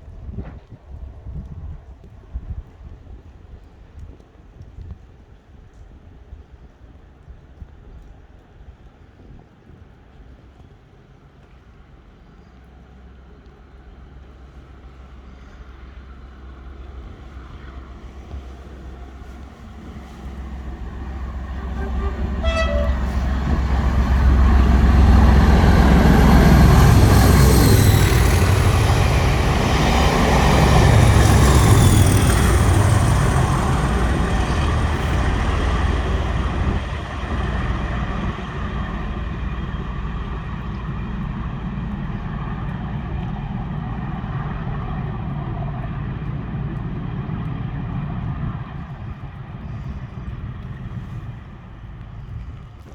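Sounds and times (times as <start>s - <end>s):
diesel locomotive engine drone: 11.2s - 52.9s
train rumbling past: 12.6s - 52.9s.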